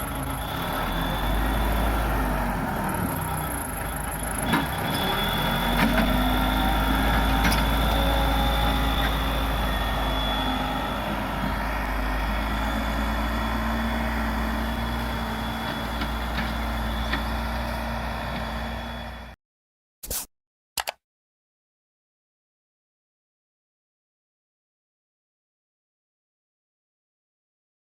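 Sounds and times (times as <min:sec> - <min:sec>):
diesel engine rumbling: 0:00.0 - 0:19.4
engine blips: 0:00.0 - 0:19.4
thin high engine whine: 0:00.0 - 0:19.4.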